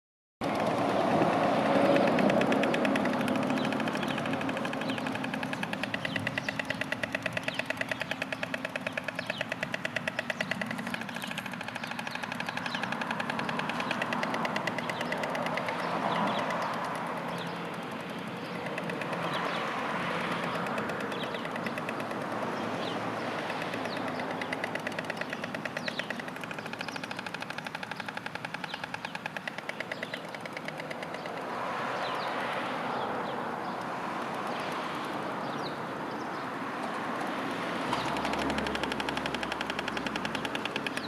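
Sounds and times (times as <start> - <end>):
storks clattering bills: 0.4 - 32.6, 37.2 - 41.0
passing road traffic: 0.4 - 41.0.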